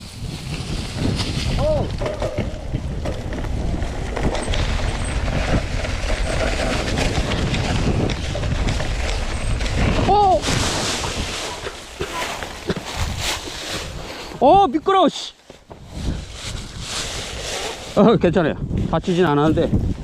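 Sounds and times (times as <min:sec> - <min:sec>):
bike rattling: 0:00.0 - 0:14.7
wind rush on microphone: 0:00.0 - 0:15.0, 0:15.6 - 0:20.0.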